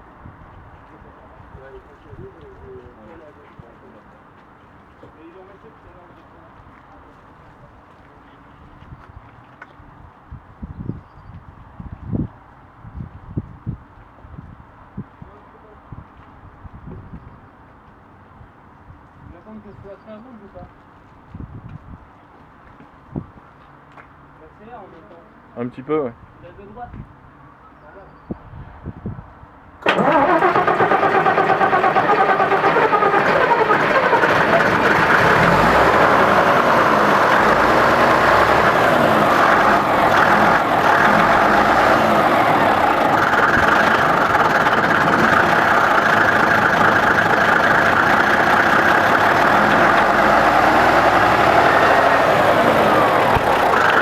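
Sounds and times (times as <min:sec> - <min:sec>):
diesel engine starting and running: 0:29.8 - 0:54.0.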